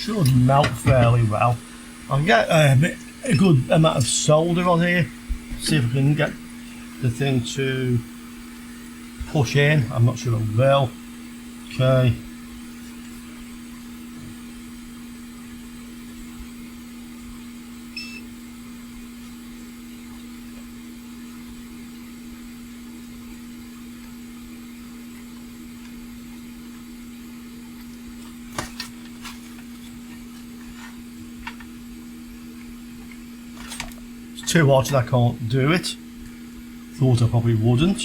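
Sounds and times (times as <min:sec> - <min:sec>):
electrical equipment hum: 0:00.0 - 0:38.0
brief beep: 0:18.0 - 0:18.3.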